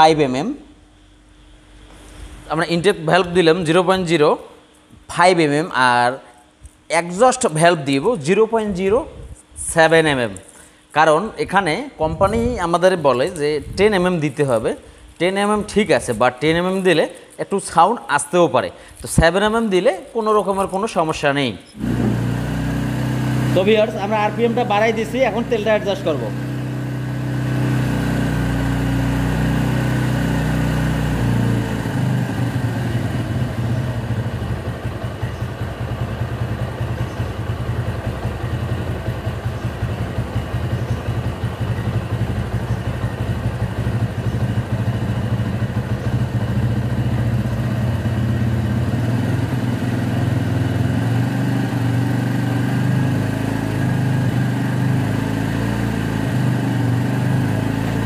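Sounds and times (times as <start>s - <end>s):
motorcycle engine idling: 21.8s - 58.0s.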